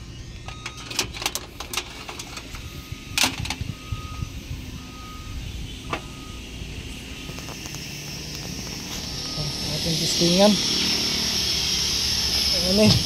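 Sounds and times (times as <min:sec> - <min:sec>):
high electronic beep: 0:02.6 - 0:07.6, 0:09.1 - 0:10.7.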